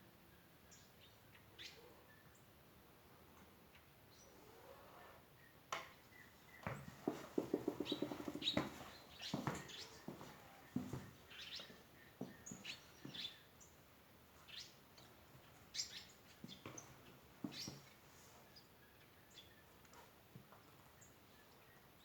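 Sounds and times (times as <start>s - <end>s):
small birds chirping: 0.4s - 2.5s, 3.6s - 22.0s
soft thumps: 6.6s - 9.6s.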